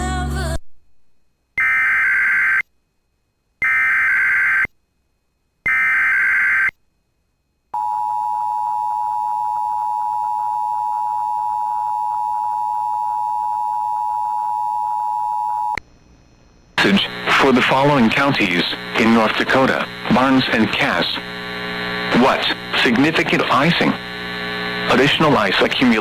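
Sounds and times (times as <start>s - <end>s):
shrill modem-like data tones: 1.6s - 2.6s, 3.6s - 4.7s, 5.7s - 6.7s, 16.8s - 26.0s.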